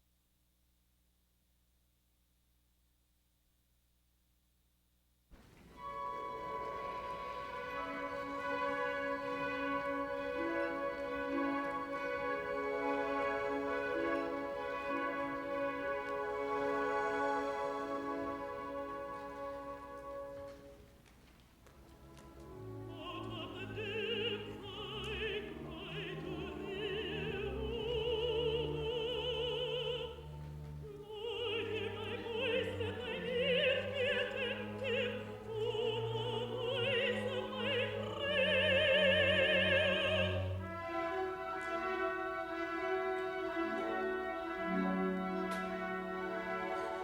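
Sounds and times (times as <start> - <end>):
full orchestra: 5.4 - 47.0
contralto singing with vibrato: 22.8 - 40.8.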